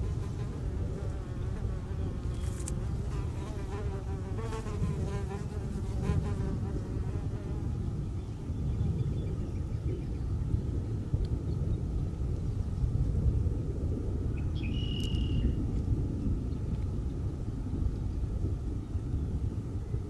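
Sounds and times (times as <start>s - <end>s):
flying insect buzzing: 0.0s - 6.9s.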